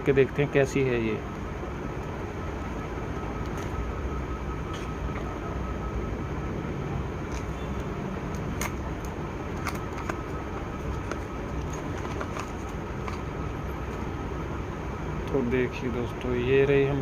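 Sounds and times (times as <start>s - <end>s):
packaging clicks and crinkles: 7.3s - 14.0s.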